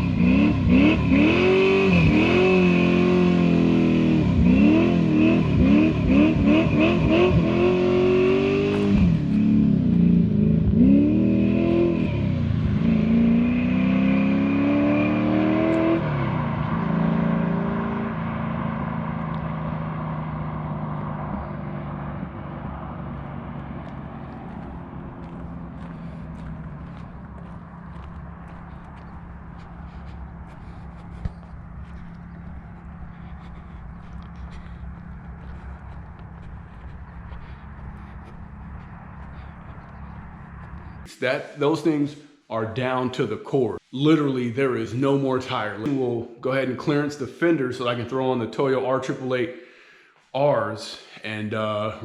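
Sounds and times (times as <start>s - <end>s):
car engine revving: 0.0s - 41.1s.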